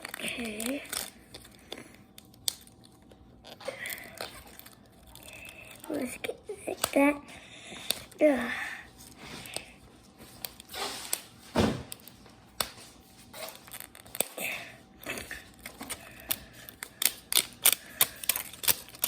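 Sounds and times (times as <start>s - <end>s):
plastic wrapper crackling: 0.0s - 7.0s, 13.4s - 19.0s.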